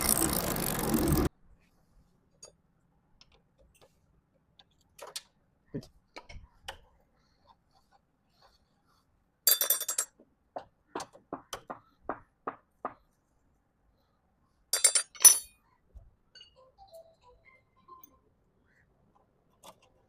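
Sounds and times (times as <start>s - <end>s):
metal parts clinking and rattling: 14.8s - 15.6s.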